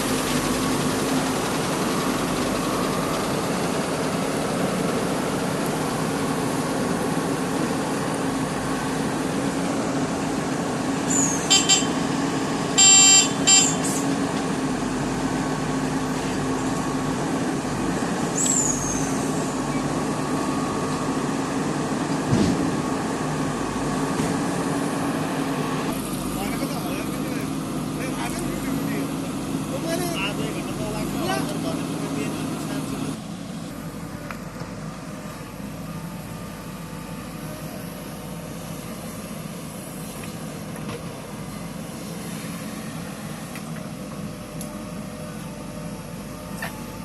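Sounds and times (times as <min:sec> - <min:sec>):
diesel engine running: 0:00.0 - 0:47.0
vehicle horn toots: 0:11.1 - 0:12.1, 0:12.8 - 0:13.9.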